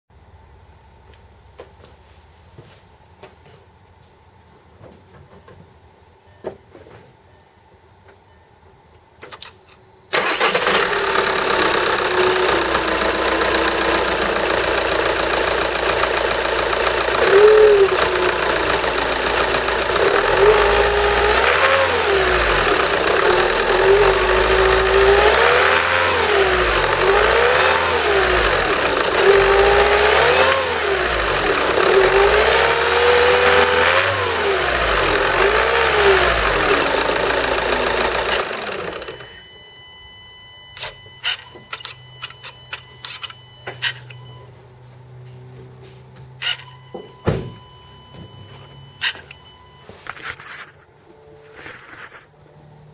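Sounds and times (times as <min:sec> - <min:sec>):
turbocharger grinding whine: 0:10.1 - 0:40.2
diesel engine idling and revving: 0:10.1 - 0:40.7.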